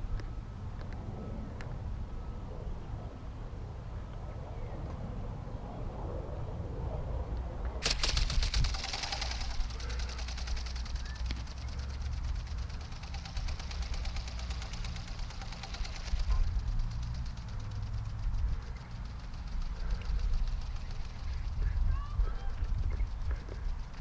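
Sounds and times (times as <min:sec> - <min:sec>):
rapid mechanical flapping clatter: 0:07.8 - 0:24.0.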